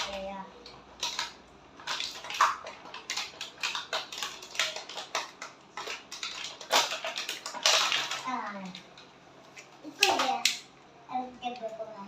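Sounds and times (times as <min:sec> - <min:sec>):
plastic toy clicks and knocks: 0:01.0 - 0:09.0, 0:10.0 - 0:10.7
packaging rustling: 0:01.0 - 0:10.4.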